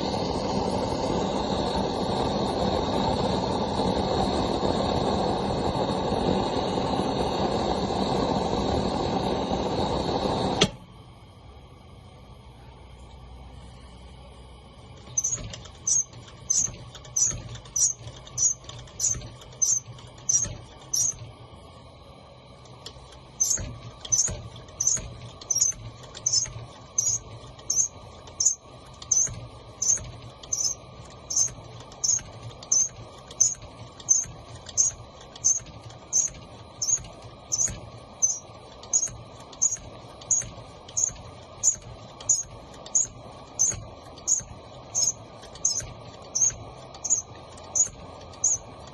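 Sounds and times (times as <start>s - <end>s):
low steady hum: 0.0s - 48.9s
hand pump squeaking: 15.1s - 21.2s.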